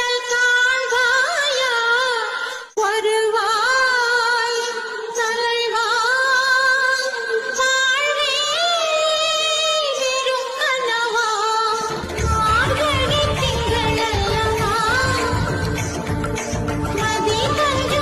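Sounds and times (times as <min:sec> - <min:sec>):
woman singing: 0:00.0 - 0:18.0
light musical accompaniment: 0:11.8 - 0:18.0.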